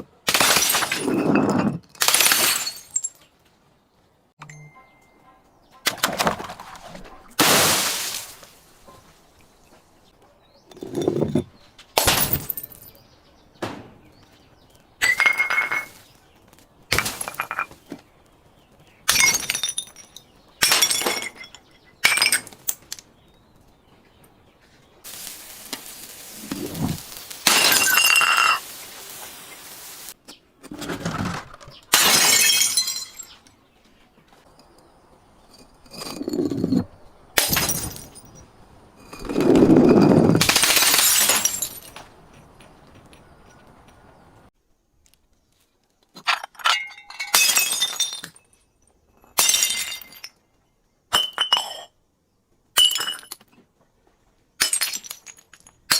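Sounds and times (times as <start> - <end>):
glass bottles smashing: 0.3 - 3.3, 7.4 - 8.9, 10.7 - 13.0, 15.0 - 16.2, 16.9 - 17.8, 19.1 - 23.0, 26.3 - 29.2, 31.9 - 33.4, 35.6 - 42.7, 46.3 - 48.6, 49.2 - 50.4, 51.1 - 51.9, 52.8 - 53.5, 54.6 - 55.9
hissing crackling: 25.0 - 30.2.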